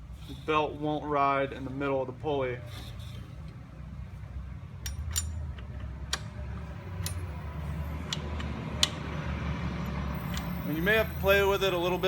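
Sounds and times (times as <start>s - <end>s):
wrench metallic clicks: 4.8s - 11.1s.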